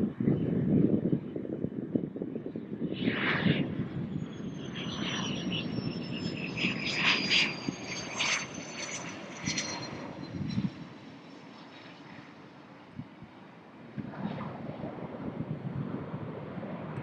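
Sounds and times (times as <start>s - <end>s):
aircraft engine rumbling: 0.0s - 17.0s
faint high whine: 2.8s - 14.6s.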